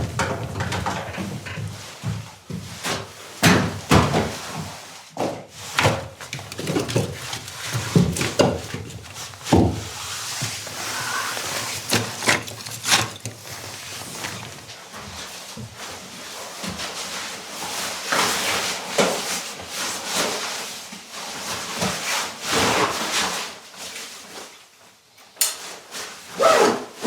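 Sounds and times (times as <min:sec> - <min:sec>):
hard objects knocking and thudding: 0:05.7 - 0:14.8.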